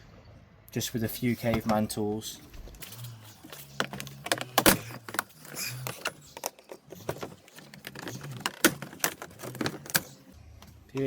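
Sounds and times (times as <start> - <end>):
hand tools clicking and rattling: 3.5 - 10.3.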